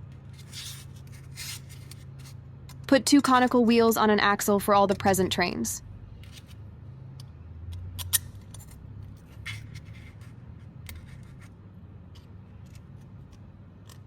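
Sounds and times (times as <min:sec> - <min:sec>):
plastic parts clicking and scraping: 0:07.7 - 0:14.0.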